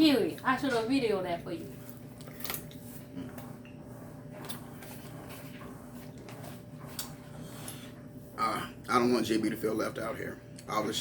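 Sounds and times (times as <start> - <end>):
low electrical hum: 0.0 - 11.0
eating and handling food: 1.7 - 8.8.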